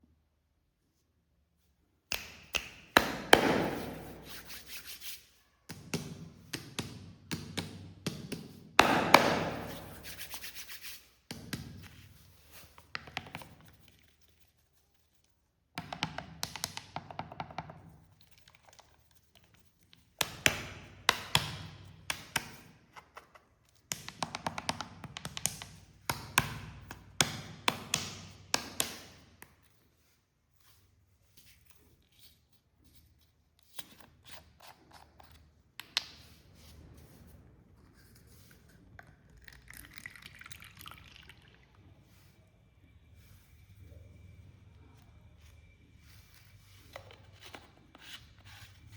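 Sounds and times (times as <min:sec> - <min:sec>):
cola pouring: 0:39.0 - 0:42.0.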